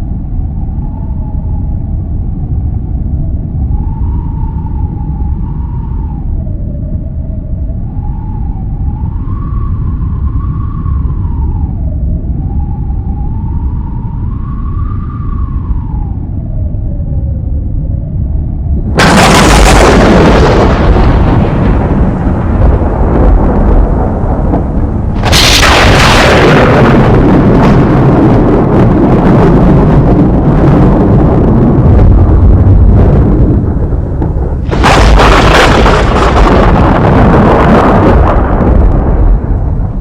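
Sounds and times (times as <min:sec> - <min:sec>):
loud booms with low rumble: 0:18.6 - 0:40.0.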